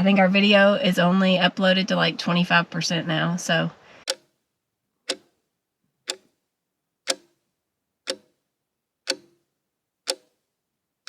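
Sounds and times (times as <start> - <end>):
clock ticking: 4.0 - 4.4, 5.0 - 10.5.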